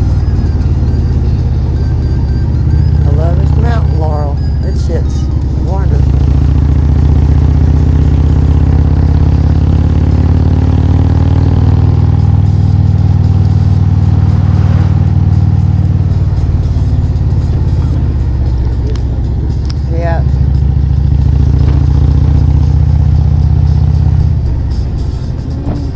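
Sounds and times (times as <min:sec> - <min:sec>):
car low rumble: 0:00.0 - 0:25.9.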